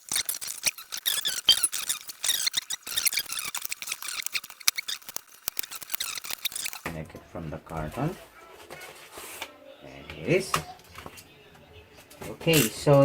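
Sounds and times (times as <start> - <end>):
cardboard crackling and squeaking: 0.0 - 6.9.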